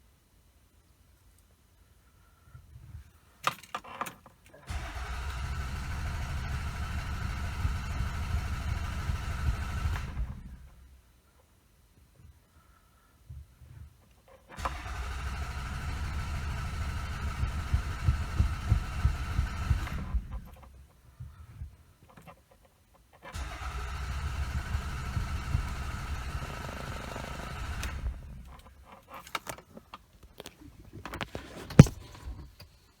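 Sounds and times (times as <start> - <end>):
engine cranked by starter: 4.6 - 10.8, 14.5 - 20.8, 23.2 - 32.6
clicks: 29.2 - 32.7
sharp click: 31.7 - 32.2.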